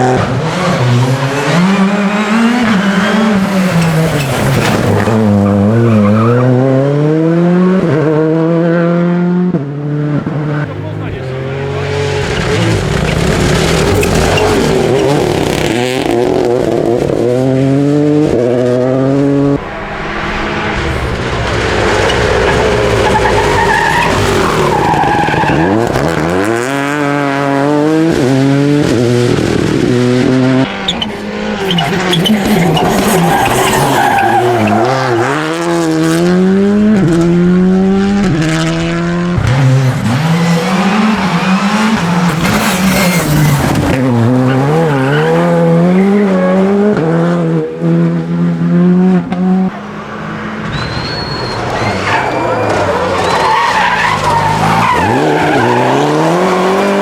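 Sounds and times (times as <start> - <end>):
rally car engine revving: 0.0 - 57.0
tyre noise: 10.2 - 17.5, 18.1 - 46.3.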